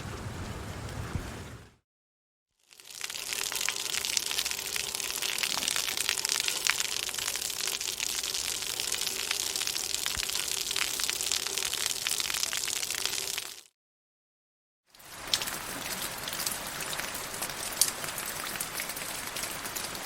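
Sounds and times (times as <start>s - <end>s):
heavy rain: 0.0s - 1.8s, 2.8s - 13.6s, 14.9s - 20.0s.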